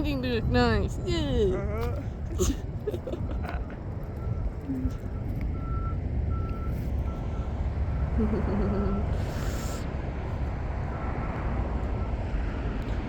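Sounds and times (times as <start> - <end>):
vehicle backup alarm beeping: 2.6 - 9.8, 10.4 - 13.0.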